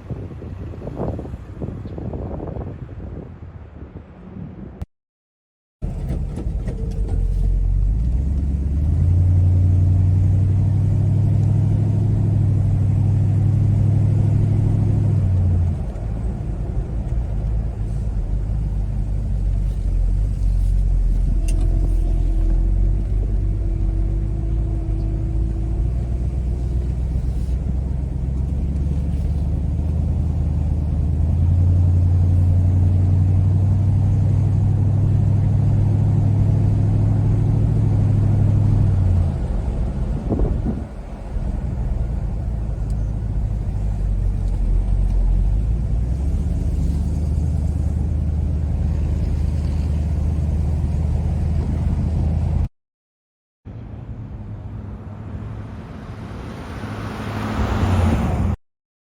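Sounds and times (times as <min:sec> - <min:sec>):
car engine rumbling: 0:05.8 - 0:52.7.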